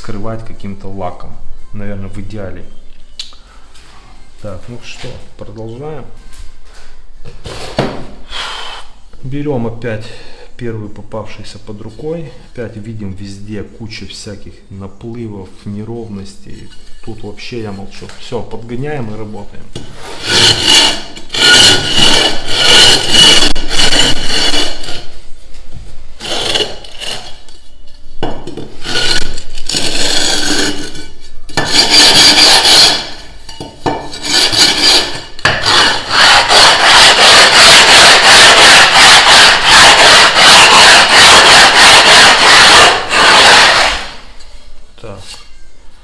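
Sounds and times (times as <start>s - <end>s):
stone tile scraping on concrete: 19.8s - 25.3s, 26.2s - 44.6s.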